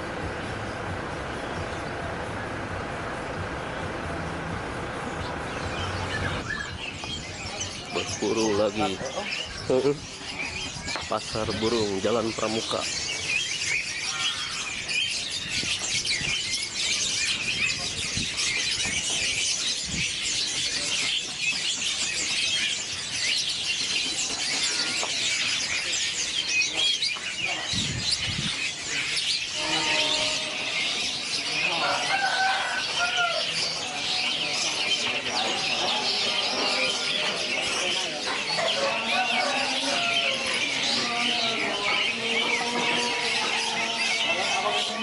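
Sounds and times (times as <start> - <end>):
songbirds chirping: 0.0 - 45.0
faint human voices: 13.8 - 45.0.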